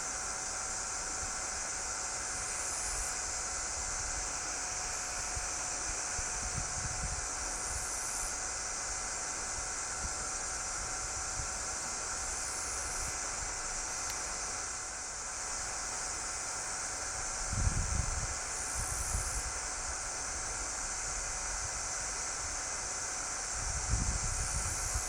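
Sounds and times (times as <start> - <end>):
steady high hiss: 0.0 - 25.0
wind buffeting microphone: 17.5 - 18.3.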